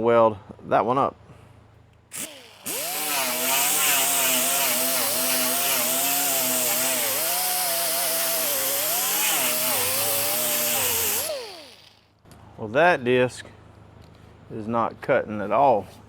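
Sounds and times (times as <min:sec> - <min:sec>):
angle grinder whining: 0:02.1 - 0:12.0.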